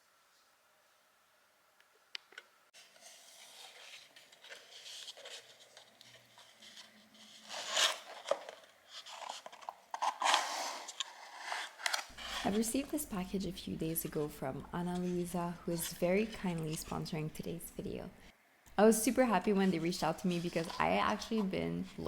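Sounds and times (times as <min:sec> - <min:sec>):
packaging rustling and crinkling: 0:02.8 - 0:13.4.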